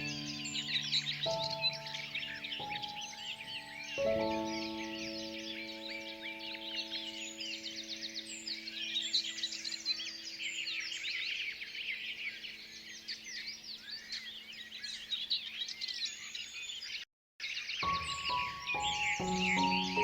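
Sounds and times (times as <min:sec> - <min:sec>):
low background music chord: 0:00.0 - 0:09.3, 0:17.8 - 0:20.0
birds chirping chorus: 0:00.0 - 0:20.0.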